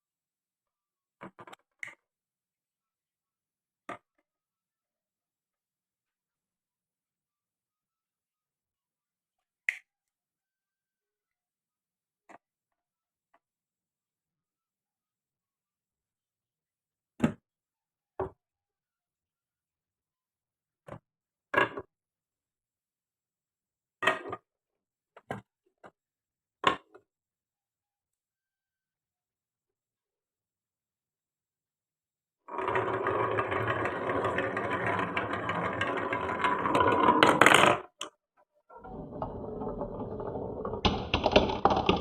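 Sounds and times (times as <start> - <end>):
marbles knocking on wood: 32.5 - 38.0, 38.9 - 42.0.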